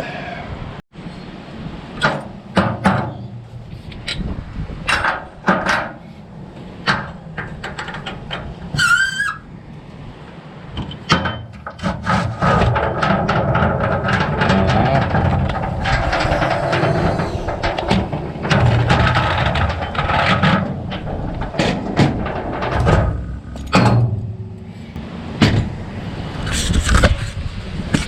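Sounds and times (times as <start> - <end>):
tools knocking and clanking: 2.0 - 8.9, 10.7 - 24.7, 25.4 - 25.8.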